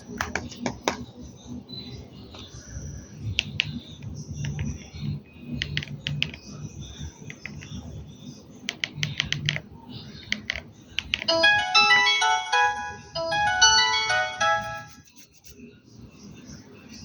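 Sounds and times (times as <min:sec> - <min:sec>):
phone keypad buttons clicking: 0:10.3 - 0:11.3
polyphonic ringtone melody: 0:11.1 - 0:15.1.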